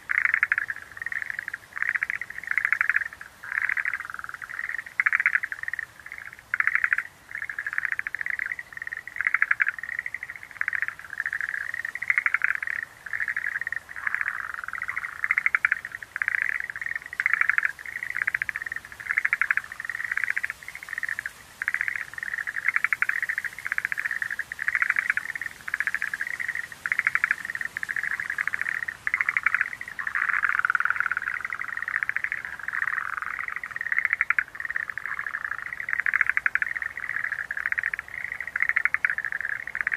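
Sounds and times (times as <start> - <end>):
tree frogs calling in chorus: 0.0 - 39.9.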